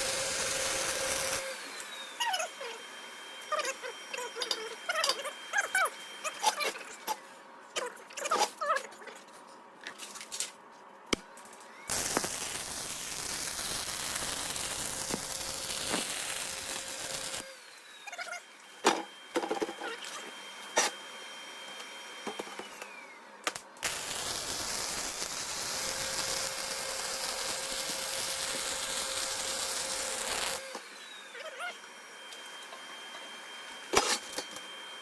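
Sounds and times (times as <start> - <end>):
arc welding buzzing crackle: 0.0 - 1.8, 11.9 - 17.5, 23.6 - 30.7.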